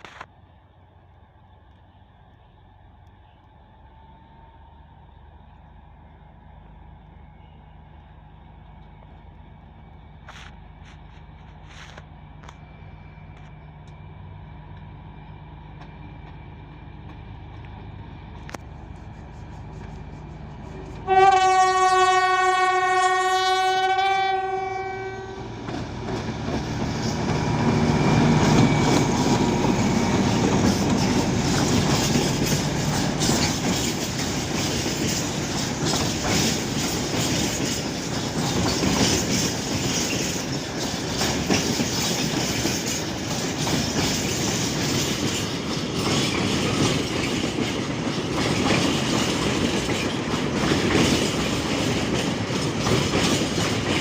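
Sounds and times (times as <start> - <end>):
train rumble passing: 0.0 - 54.0
train horn blast: 20.8 - 25.5
wheels clacking over rail joints: 25.2 - 54.0.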